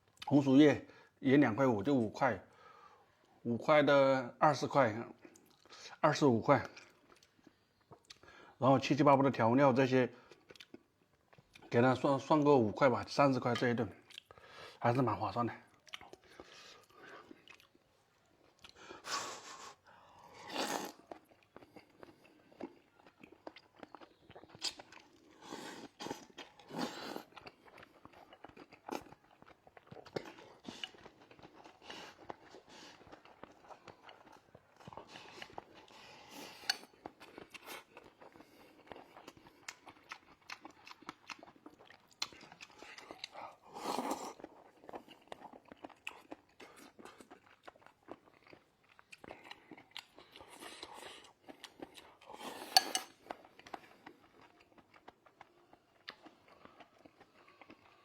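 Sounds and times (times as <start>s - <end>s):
person chewing food: 6.6s - 8.6s, 10.2s - 11.8s, 13.4s - 58.0s.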